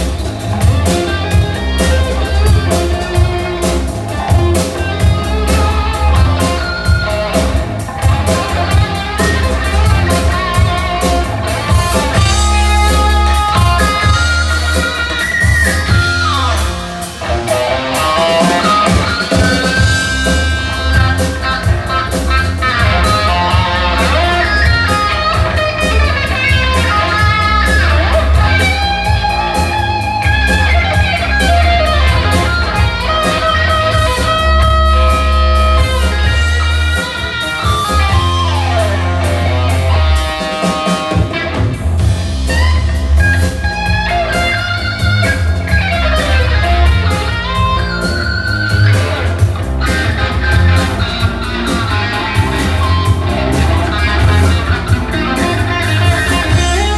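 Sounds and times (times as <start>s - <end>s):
low bass: 0.0s - 17.9s, 18.6s - 40.3s, 41.7s - 56.9s
band music: 0.0s - 56.9s
electric guitar sliding notes: 0.0s - 56.9s.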